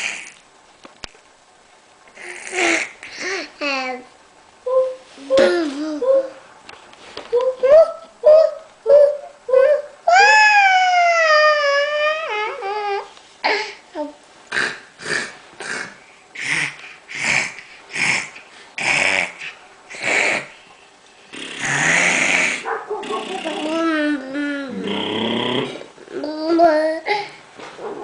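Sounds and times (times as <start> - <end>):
child squealing: 7.4 - 13.1.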